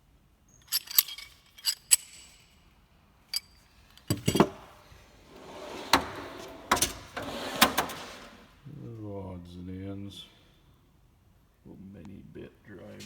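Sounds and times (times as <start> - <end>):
metal tools clinking: 0.5 - 2.7, 3.3 - 5.0
toolbox drawer sliding rattle: 4.0 - 8.5.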